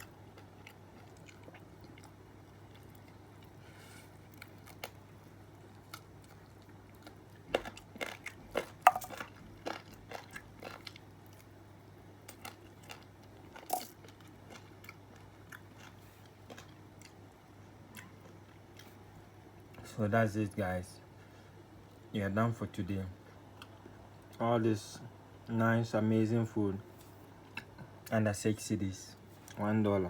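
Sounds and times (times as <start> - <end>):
chewing: 0.0 - 11.5, 12.3 - 17.3.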